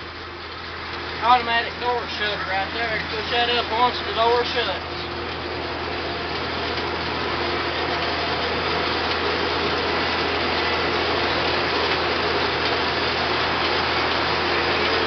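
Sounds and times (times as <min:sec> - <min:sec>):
tractor diesel engine running: 0:00.0 - 0:15.0.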